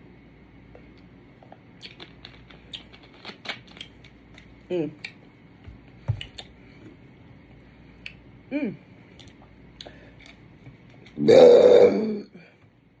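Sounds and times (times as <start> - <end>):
lip smacks and mouth clicks: 0.9 - 5.2, 6.2 - 6.6, 8.0 - 8.2, 9.2 - 11.2
person humming: 11.2 - 12.4.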